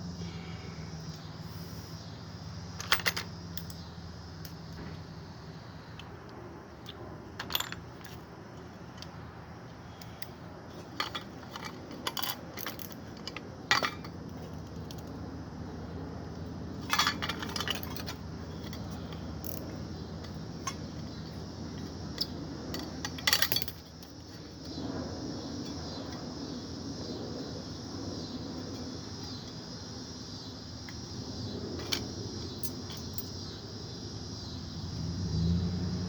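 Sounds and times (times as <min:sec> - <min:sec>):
steady low hum: 0:00.0 - 0:36.0
metal tools clinking and clanking: 0:02.8 - 0:03.8, 0:07.4 - 0:08.2, 0:10.7 - 0:15.0, 0:16.8 - 0:21.1, 0:21.8 - 0:24.1.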